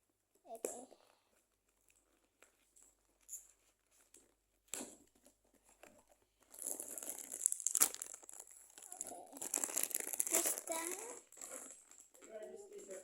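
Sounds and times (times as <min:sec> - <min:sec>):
packaging rustling and clicking: 0:05.2 - 0:13.0
packaging crinkling and tearing: 0:06.5 - 0:12.2.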